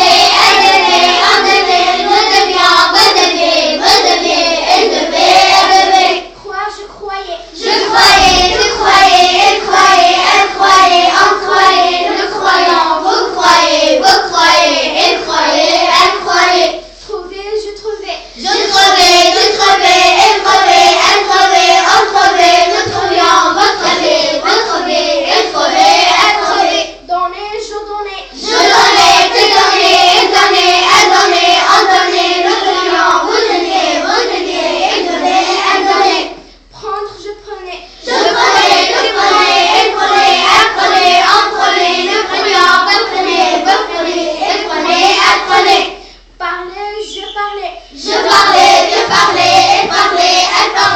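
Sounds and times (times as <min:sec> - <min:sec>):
young voices singing a chant: 0:00.0 - 0:50.9.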